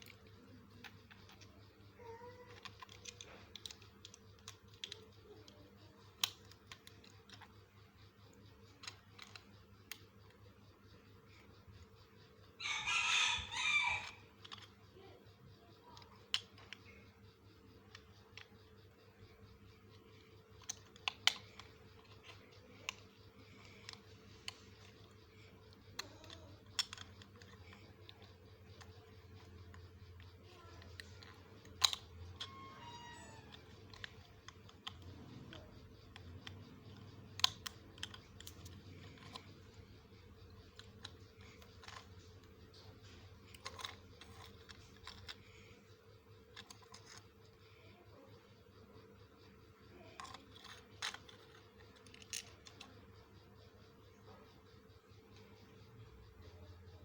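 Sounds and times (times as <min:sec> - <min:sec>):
plastic building blocks clicking: 0:00.0 - 0:12.6, 0:14.0 - 0:54.0
rooster crowing: 0:12.6 - 0:14.2.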